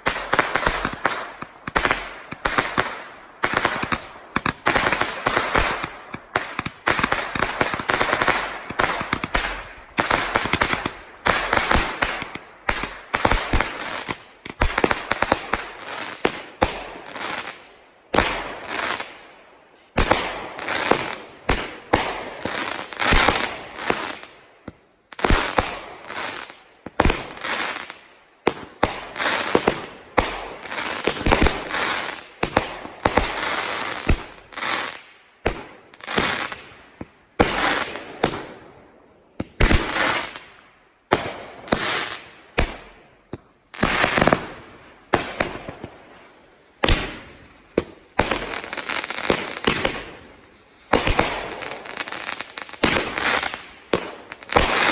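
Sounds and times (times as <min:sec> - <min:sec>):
fireworks crackling: 0:00.0 - 0:38.7, 0:39.4 - 0:54.9
fireworks booming: 0:42.6 - 0:46.2.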